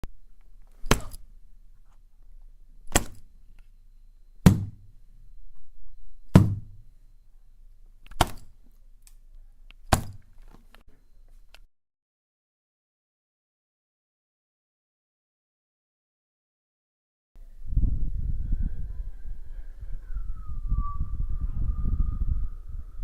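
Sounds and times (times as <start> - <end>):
faint low hum: 0.0 - 11.7
sharp knocks: 0.8 - 1.2, 4.4 - 4.9, 6.3 - 6.8, 9.9 - 10.2.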